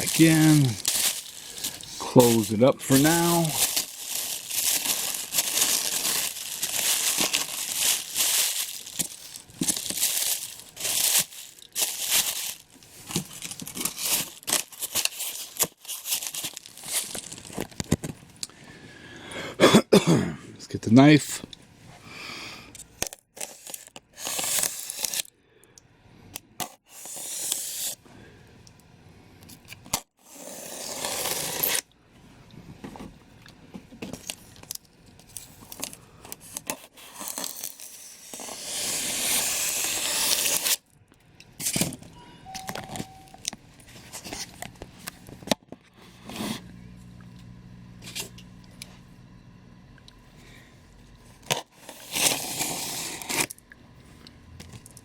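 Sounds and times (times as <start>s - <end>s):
knife tearing through cardboard: 30.2s - 31.8s, 37.0s - 40.8s, 51.5s - 53.5s.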